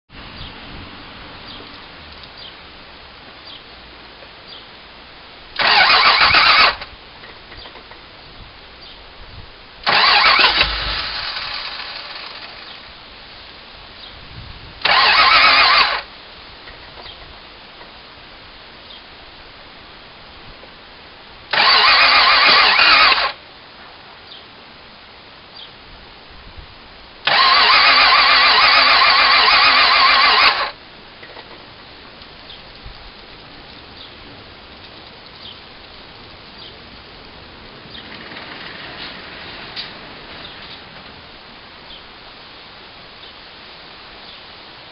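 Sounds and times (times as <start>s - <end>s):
engine starter cranking: 5.6s - 6.9s, 9.8s - 12.8s, 14.8s - 16.1s, 21.5s - 23.4s, 27.3s - 30.8s.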